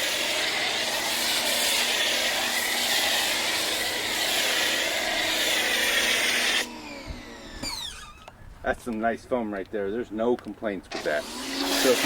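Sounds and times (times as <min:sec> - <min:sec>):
foam spray hissing: 0:00.0 - 0:06.7, 0:11.7 - 0:12.0
pump motor hum: 0:04.8 - 0:08.3, 0:10.9 - 0:12.0.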